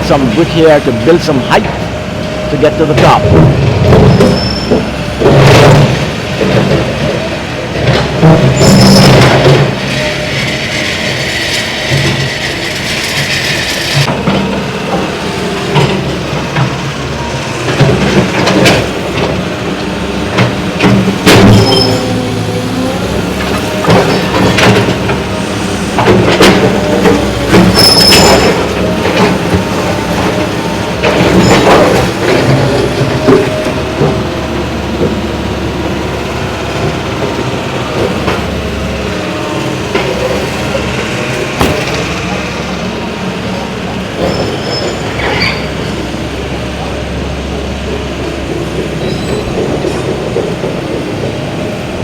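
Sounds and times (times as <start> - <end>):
excavator engine under load: 0.0 - 52.0
metal squealing: 4.0 - 5.0, 8.5 - 9.4, 21.4 - 25.6, 26.7 - 32.2, 44.2 - 45.9.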